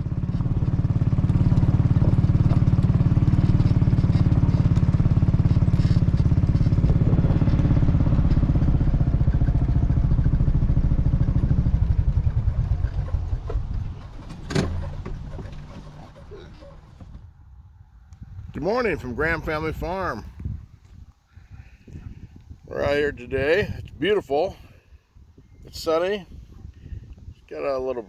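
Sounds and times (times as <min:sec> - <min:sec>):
small engine running: 0:00.0 - 0:17.2.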